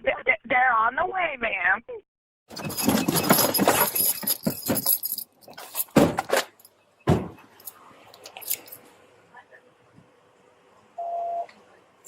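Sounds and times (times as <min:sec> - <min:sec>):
metal keys jangling: 0:02.6 - 0:06.7, 0:07.6 - 0:08.9
heavy thumps: 0:05.8 - 0:07.5.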